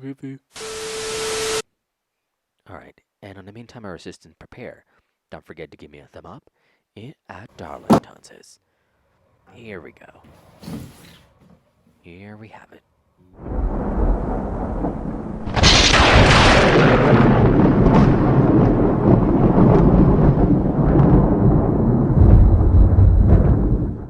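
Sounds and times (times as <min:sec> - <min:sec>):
thunder crack and rumble: 0:13.4 - 0:24.0.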